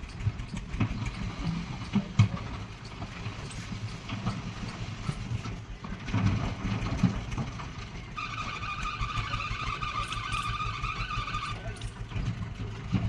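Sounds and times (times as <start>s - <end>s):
heavy machinery diesel engine: 0.0s - 13.0s.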